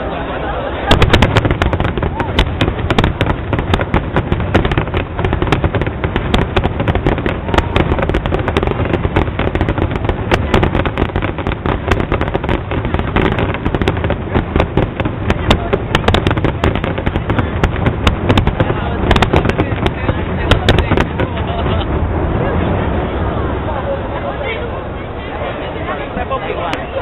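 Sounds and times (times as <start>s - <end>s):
steady rumble: 0.0s - 27.0s
fireworks bangs and crackles: 0.8s - 22.4s.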